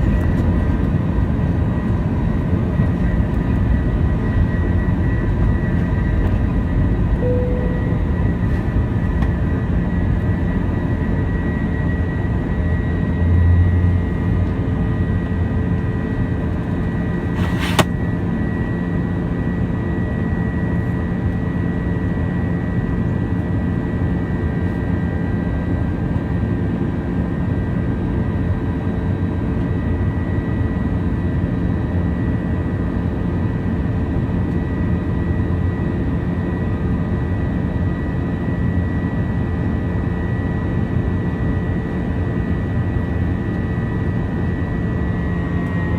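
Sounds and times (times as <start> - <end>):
faint engine whine: 0.0 - 45.9
jet engines rumbling in cabin: 0.0 - 45.9
sharp click: 17.4 - 17.9.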